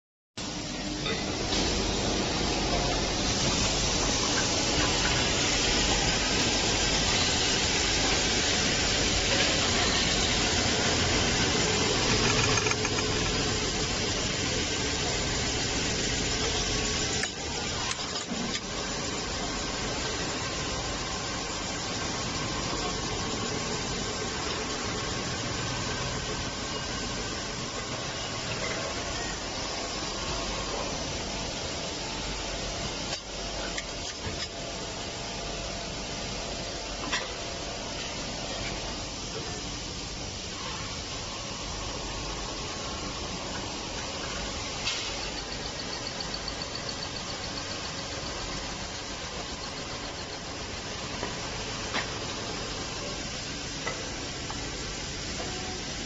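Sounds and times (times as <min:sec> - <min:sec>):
polishing machine hissing on metal: 0:01.3 - 0:32.3.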